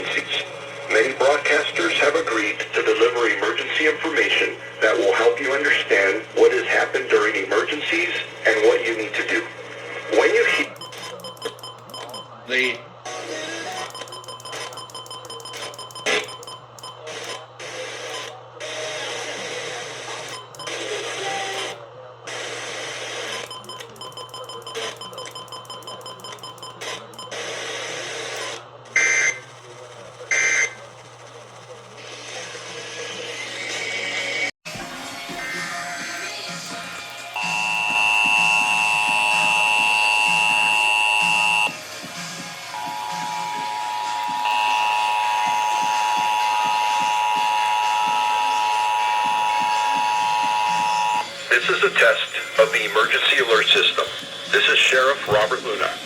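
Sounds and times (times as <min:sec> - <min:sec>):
radio static and hiss: 0:00.0 - 0:11.5, 0:36.5 - 0:56.0
clicking buzzing interference: 0:42.8 - 0:51.8.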